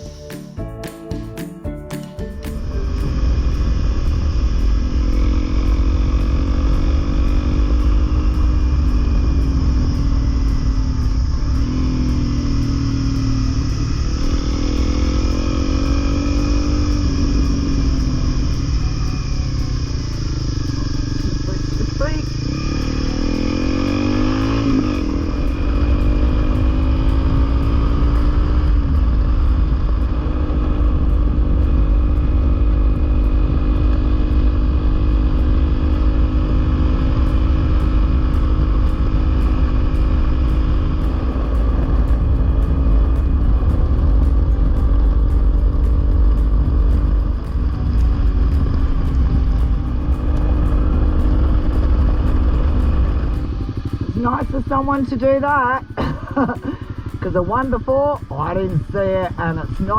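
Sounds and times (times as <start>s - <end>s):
motorcycle engine accelerating: 0.0s - 59.9s
wind buffeting microphone: 2.6s - 59.9s.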